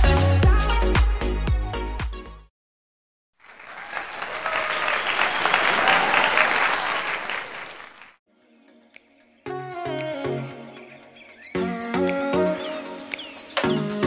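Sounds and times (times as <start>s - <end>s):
music: 0.0s - 2.5s, 8.3s - 14.0s
crowd applauding: 3.4s - 8.2s.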